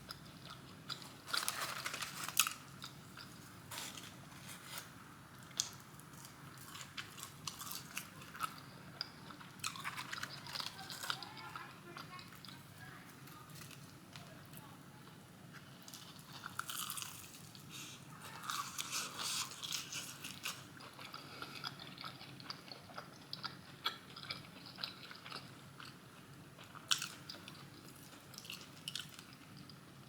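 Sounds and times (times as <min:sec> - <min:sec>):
crunching fried chicken: 0:00.0 - 0:14.7, 0:15.5 - 0:30.0.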